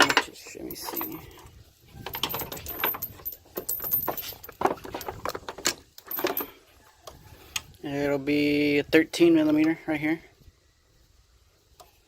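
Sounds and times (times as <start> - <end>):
metal sockets clinking: 0.0 - 6.6.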